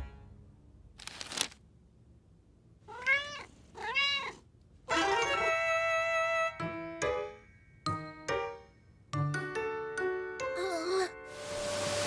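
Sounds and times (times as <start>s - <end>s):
cartoon cat meowing: 2.9s - 6.6s.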